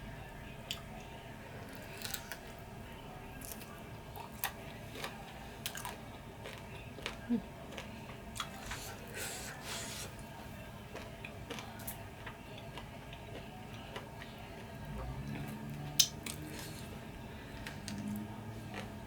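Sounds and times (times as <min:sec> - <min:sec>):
person chewing chicken wings: 0:01.6 - 0:02.6, 0:03.4 - 0:17.0.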